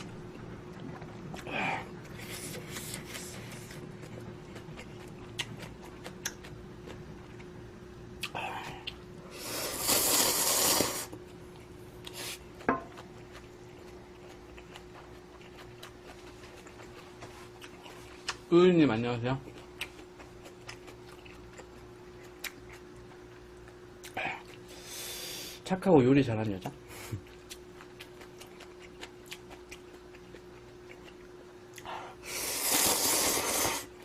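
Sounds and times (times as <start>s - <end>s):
chewing: 0.0s - 7.5s, 11.5s - 18.4s, 19.4s - 24.7s, 27.2s - 32.0s
steady hum: 0.0s - 34.0s
loud slurp: 9.4s - 11.1s, 32.3s - 33.9s.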